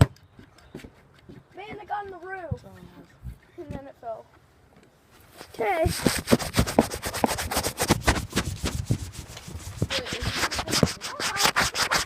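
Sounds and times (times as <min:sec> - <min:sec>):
rubbing and scraping: 0:05.2 - 0:12.0.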